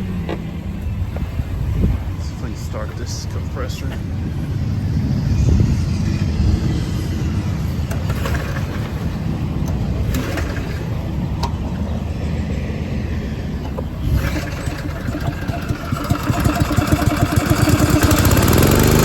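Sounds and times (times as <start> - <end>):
air compressor engine running: 7.0 - 12.5, 13.4 - 19.0.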